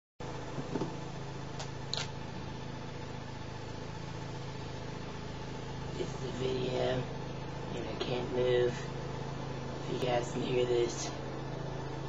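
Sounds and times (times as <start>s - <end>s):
steady mechanical hum: 0.2s - 12.0s.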